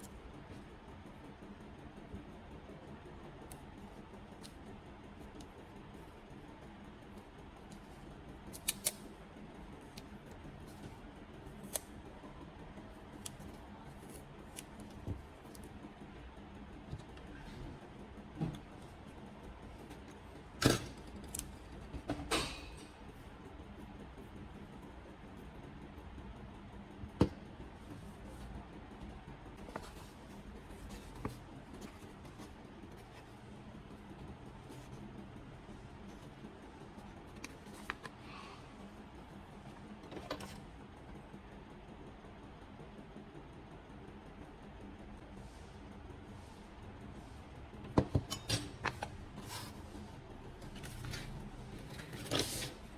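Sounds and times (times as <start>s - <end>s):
faint steady hum: 0.0s - 52.9s
sharp handling clicks: 8.5s - 9.1s.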